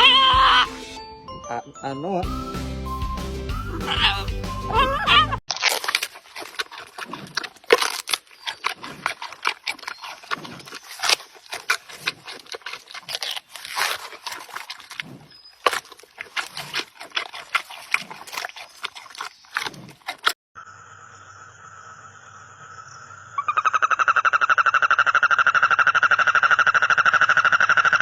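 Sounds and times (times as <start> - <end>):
animal clicking and grunting: 5.4 - 20.4.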